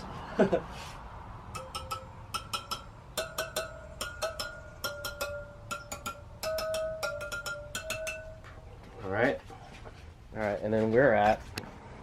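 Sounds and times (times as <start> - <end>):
metal spokes pinging: 1.5 - 9.5.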